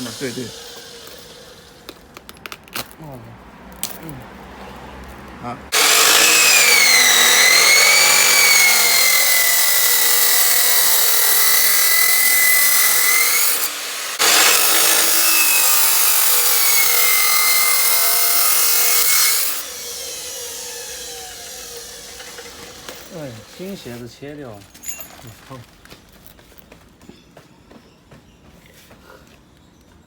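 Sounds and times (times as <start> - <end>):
power tool cutting: 0.0 - 2.0, 5.7 - 24.0.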